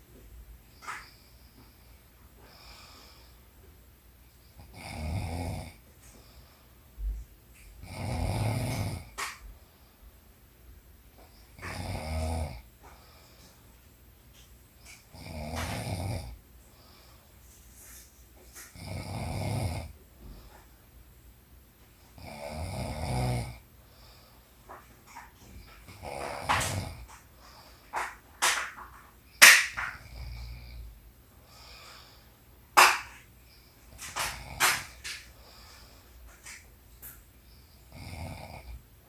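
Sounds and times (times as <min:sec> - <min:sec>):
woman snoring: 0:04.6 - 0:05.8, 0:07.8 - 0:09.2, 0:11.6 - 0:12.6, 0:15.1 - 0:16.4, 0:18.7 - 0:19.9, 0:22.2 - 0:23.6, 0:37.9 - 0:38.8.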